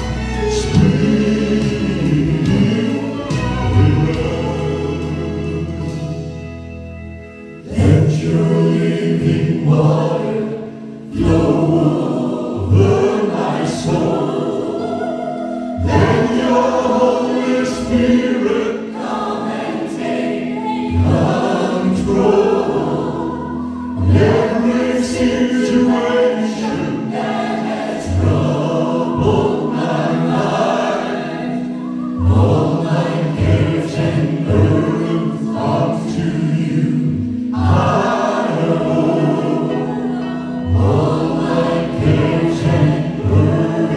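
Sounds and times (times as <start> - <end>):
bass notes: 0.0 - 14.6
choir singing gospel: 0.0 - 43.9.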